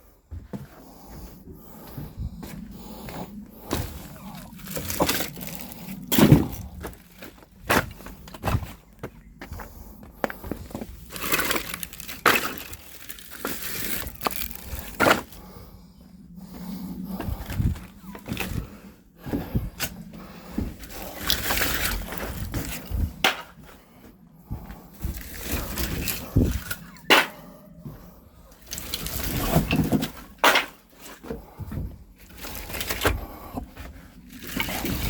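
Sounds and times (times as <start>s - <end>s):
wood scraping: 0.4s - 15.4s, 24.6s - 35.0s
firewood logs clunking together: 3.6s - 9.6s, 10.2s - 15.4s, 20.6s - 23.8s, 24.6s - 27.5s, 28.6s - 35.0s.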